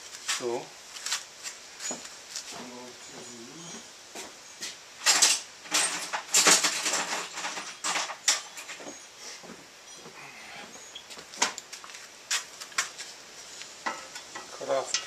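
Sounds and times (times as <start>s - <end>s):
metal clattering on workbench: 5.0s - 8.8s.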